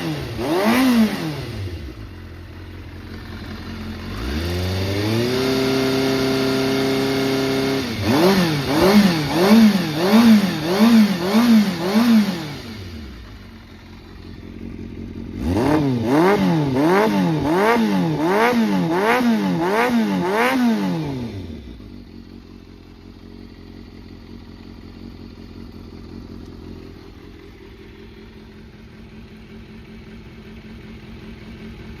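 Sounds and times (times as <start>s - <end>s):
motorcycle engine revving: 0.0s - 32.0s.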